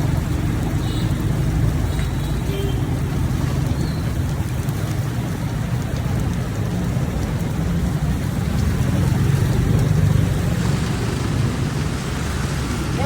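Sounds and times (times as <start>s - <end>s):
heavy rain: 0.0s - 13.0s
street traffic: 0.0s - 13.0s.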